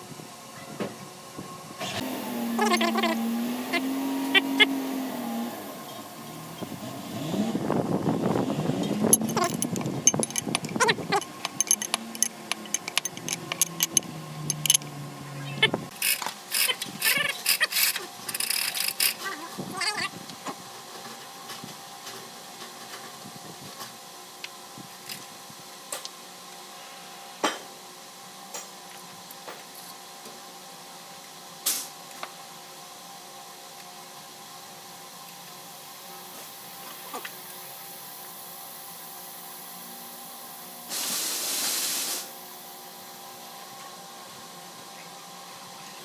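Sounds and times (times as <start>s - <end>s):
metal tools clinking: 2.6s - 3.2s, 9.0s - 15.0s, 15.9s - 19.3s
steady background hum: 8.1s - 20.4s.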